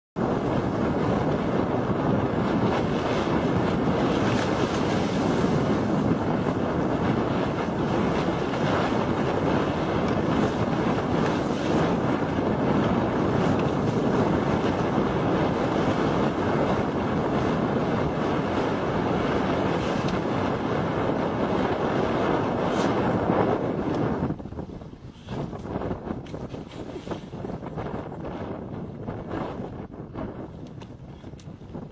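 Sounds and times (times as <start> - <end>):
wind buffeting microphone: 0.2 - 31.9
surf rushing: 0.3 - 23.8.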